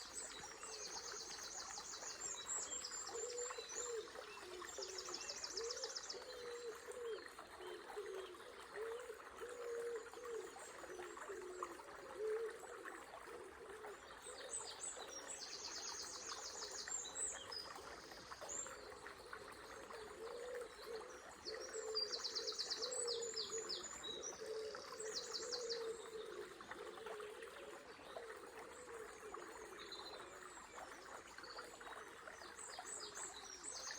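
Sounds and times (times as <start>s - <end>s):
songbirds singing: 20.4s - 26.5s.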